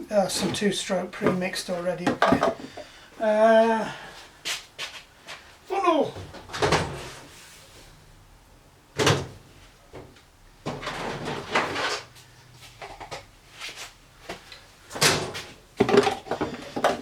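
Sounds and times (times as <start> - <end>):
rummaging and rattling: 15.0 - 17.0.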